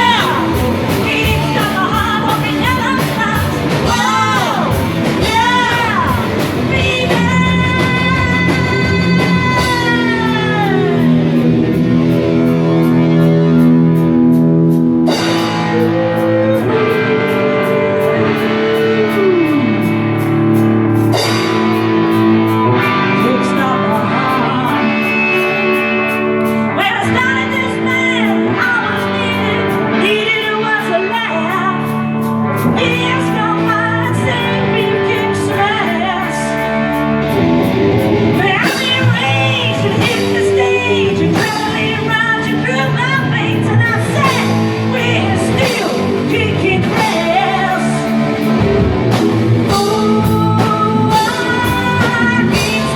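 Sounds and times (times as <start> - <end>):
drum beat: 0.0 - 10.0
electric guitar: 0.0 - 52.9
person singing: 0.0 - 52.9.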